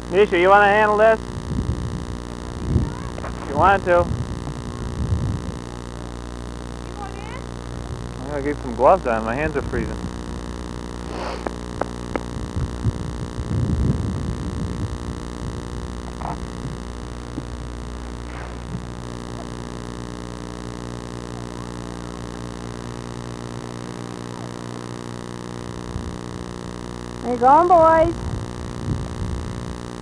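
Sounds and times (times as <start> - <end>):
steady low hum: 0.0 - 30.0
clicks: 11.4 - 12.4.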